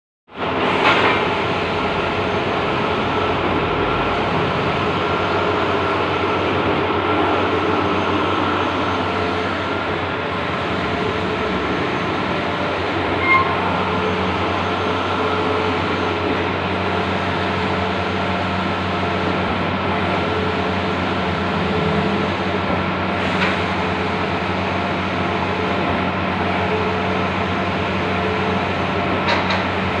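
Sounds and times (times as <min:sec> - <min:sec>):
printer mechanical whir: 0:00.4 - 0:30.0
short high tone: 0:13.2 - 0:13.7.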